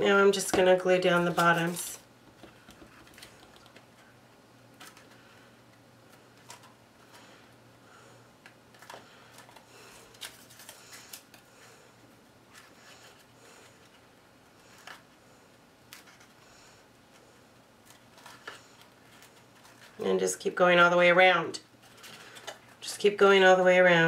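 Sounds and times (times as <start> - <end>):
paper rustling: 0.9 - 4.2, 8.7 - 11.7, 17.8 - 20.0.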